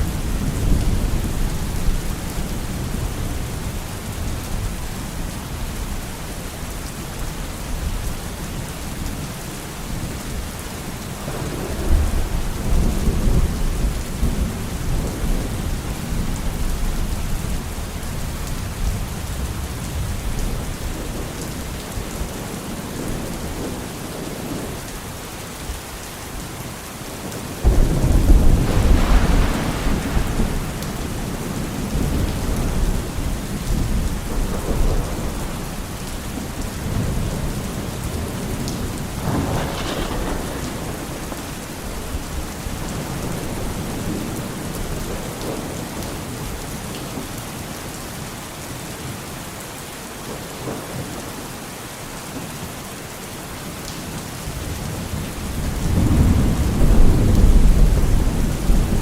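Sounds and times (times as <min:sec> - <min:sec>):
steady rain: 0:00.0 - 0:59.0
thunder cracking and rumbling: 0:11.3 - 0:17.6, 0:27.6 - 0:46.2, 0:55.5 - 0:59.0.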